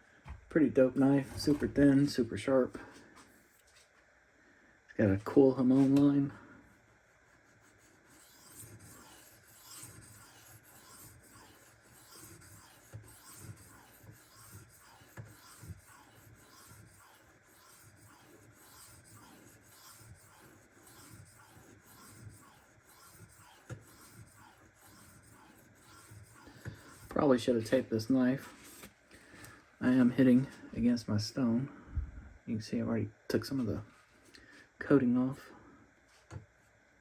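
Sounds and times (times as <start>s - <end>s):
knife scraping on whetstone: 7.5s - 27.2s.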